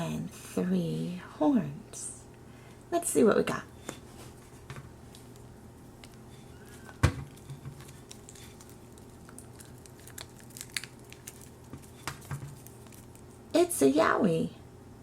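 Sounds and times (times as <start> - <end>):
plastic egg handling ticks and rustles: 7.3 - 13.4.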